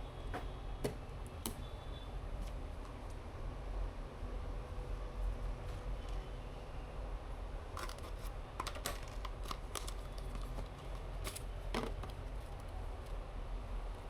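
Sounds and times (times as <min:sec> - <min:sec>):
packaging being handled: 0:07.8 - 0:12.8.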